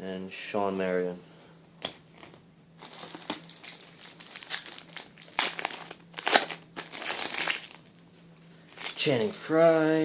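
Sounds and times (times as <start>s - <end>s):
plastic wrapper crinkling: 2.8s - 7.9s, 8.6s - 9.4s.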